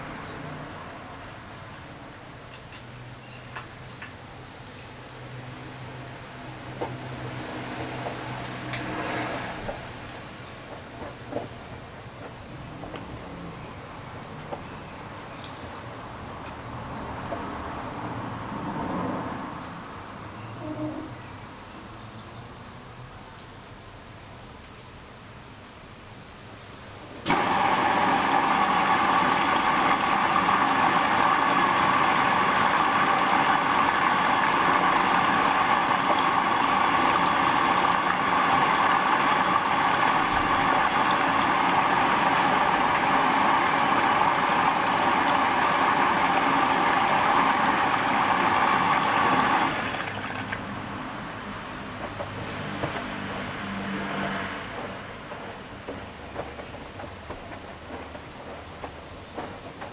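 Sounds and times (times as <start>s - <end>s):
washing machine rushing noise: 27.2s - 59.9s.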